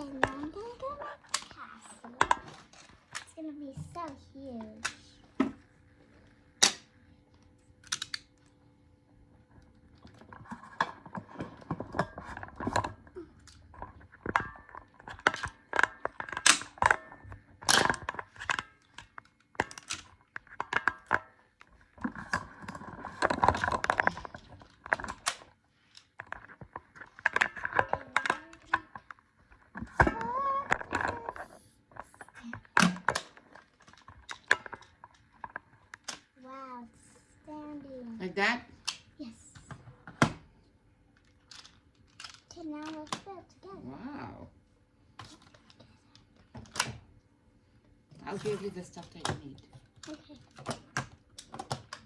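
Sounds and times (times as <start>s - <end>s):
plastic tiles clicking and clattering: 10.0s - 21.2s, 22.0s - 29.2s, 32.4s - 36.2s.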